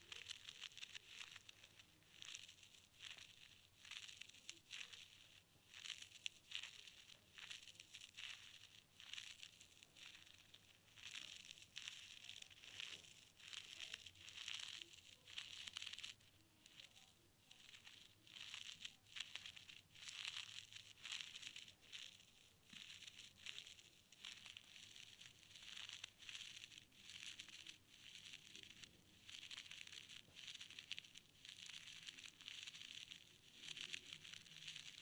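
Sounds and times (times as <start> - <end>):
scratchy rustling in ear: 0.0 - 35.0
small clicks: 11.2 - 35.0.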